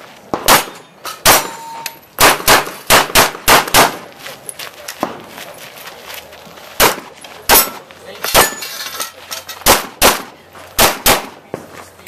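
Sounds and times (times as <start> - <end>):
pistol shots: 0.3 - 4.1, 6.8 - 8.6, 9.6 - 11.4.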